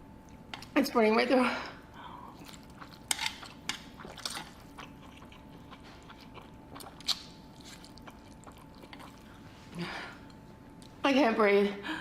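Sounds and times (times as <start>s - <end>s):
person chewing and slurping noodles: 2.2s - 10.4s.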